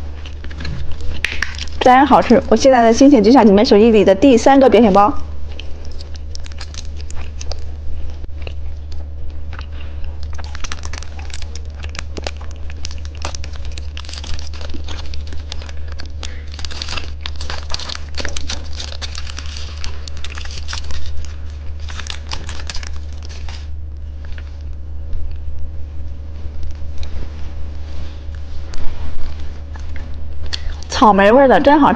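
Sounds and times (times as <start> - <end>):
plastic wrapper crinkling: 0.0 - 3.8, 5.4 - 24.8
steady low hum: 0.0 - 31.9.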